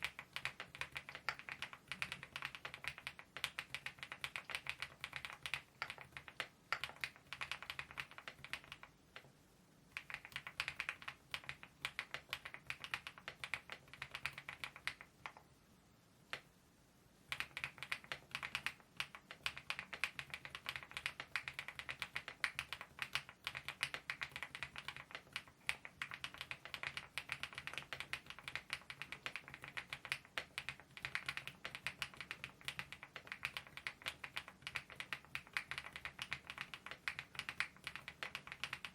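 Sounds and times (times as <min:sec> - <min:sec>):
typing on mechanical keyboard: 0:00.0 - 0:09.3, 0:10.0 - 0:15.4, 0:17.3 - 0:38.9.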